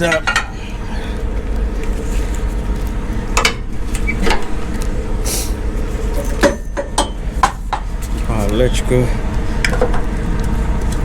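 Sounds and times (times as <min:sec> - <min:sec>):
truck engine idling: 0:00.0 - 0:11.0
air hiss: 0:05.2 - 0:05.7.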